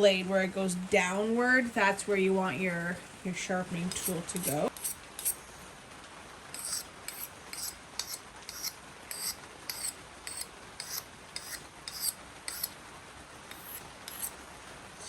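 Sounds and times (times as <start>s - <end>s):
sharpener rasping on shears blade: 3.9s - 5.4s, 6.6s - 12.7s, 13.5s - 14.4s.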